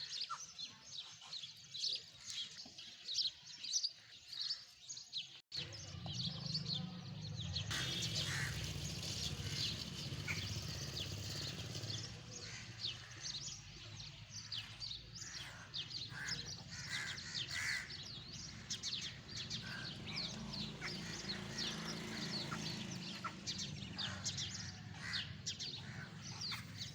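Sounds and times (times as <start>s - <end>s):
birds chirping: 0.0s - 26.9s
harsh bird calls: 0.0s - 26.9s.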